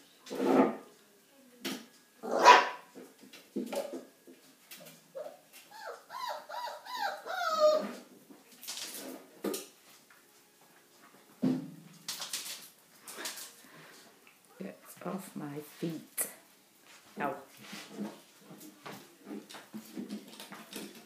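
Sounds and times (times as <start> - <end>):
puppies barking: 2.3 - 2.8, 5.2 - 8.0
puppies whining and yipping: 5.2 - 8.0.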